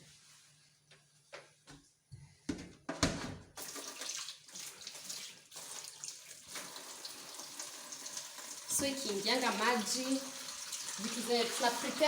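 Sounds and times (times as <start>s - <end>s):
tap water running: 3.6s - 12.0s.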